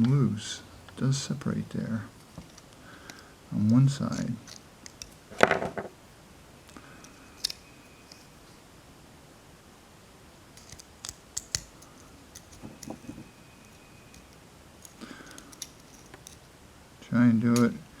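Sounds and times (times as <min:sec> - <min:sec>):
metallic clicks and scrapes of hand tool: 0:07.0 - 0:08.3, 0:10.6 - 0:16.4.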